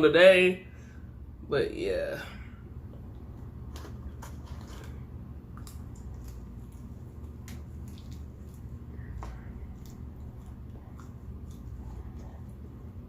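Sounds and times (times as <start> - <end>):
steady low hum: 0.0 - 13.0
chewing clicks: 5.5 - 12.7.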